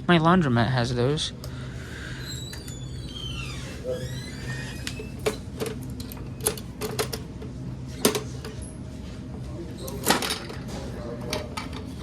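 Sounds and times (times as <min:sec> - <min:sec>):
steady low hum: 0:00.0 - 0:12.0
vending machine clicks and clacks: 0:05.2 - 0:07.4.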